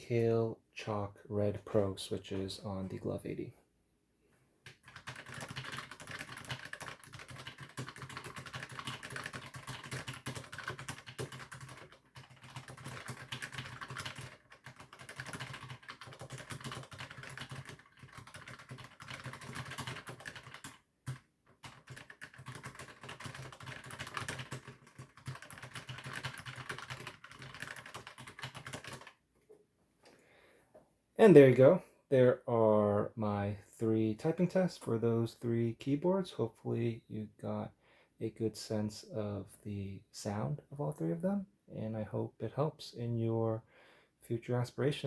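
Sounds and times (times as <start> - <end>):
fast keyboard typing: 4.6 - 29.2.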